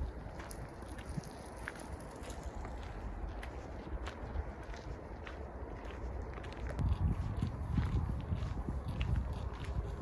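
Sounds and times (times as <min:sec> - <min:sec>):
footsteps on path: 0:00.0 - 0:10.0
wind buffeting microphone: 0:00.0 - 0:10.0.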